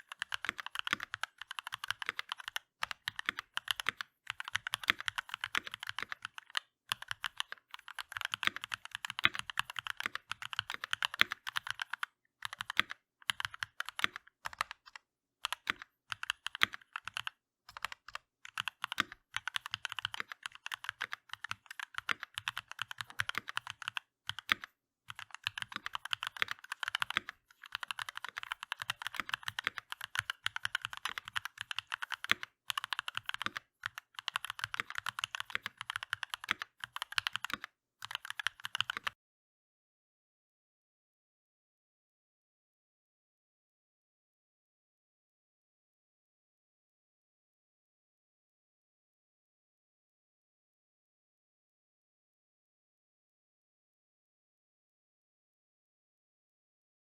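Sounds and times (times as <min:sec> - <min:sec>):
mechanical keyboard typing: 0:00.0 - 0:39.2.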